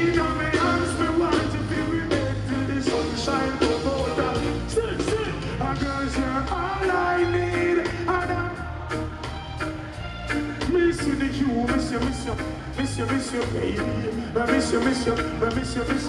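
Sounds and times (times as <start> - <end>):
steady drum beat: 0.0 - 12.4
live band playing slow song: 0.0 - 16.0
person singing: 0.0 - 16.0
strong bass line: 0.0 - 16.0.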